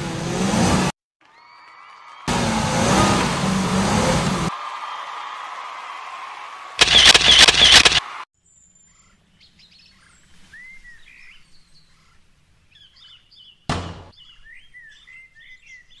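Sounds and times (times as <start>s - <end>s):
loud rough noise burst: 6.8s - 8.1s
faint birds chirping: 8.4s - 16.0s
sharp thump: 13.7s - 14.1s.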